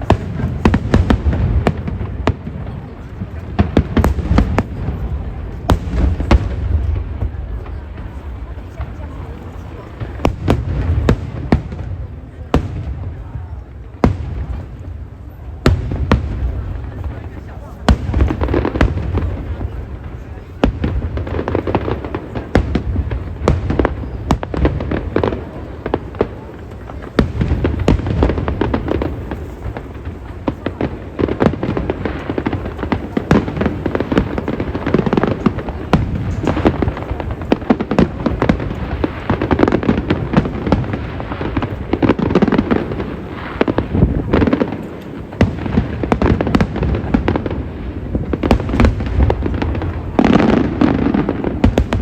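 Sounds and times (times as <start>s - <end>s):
fireworks bangs and crackling: 0.0s - 52.0s.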